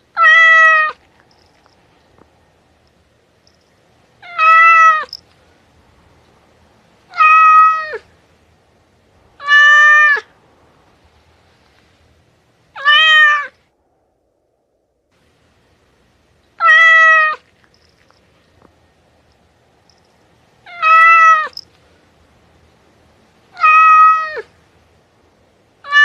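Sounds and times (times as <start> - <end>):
cat meowing: 0.1 - 1.1, 4.2 - 5.1, 7.1 - 8.1, 9.4 - 10.3, 12.8 - 13.6, 16.6 - 17.5, 20.6 - 21.6, 23.5 - 24.5.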